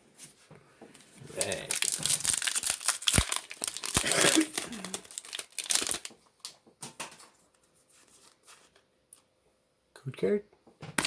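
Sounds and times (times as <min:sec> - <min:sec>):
cards rustling and clicking: 0:01.3 - 0:06.6
foil wrapper crinkling and tearing: 0:01.3 - 0:06.6.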